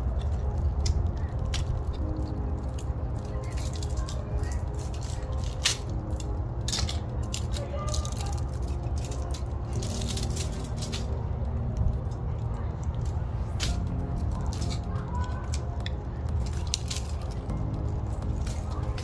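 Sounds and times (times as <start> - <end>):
foil pouch crinkling: 0.6 - 11.2.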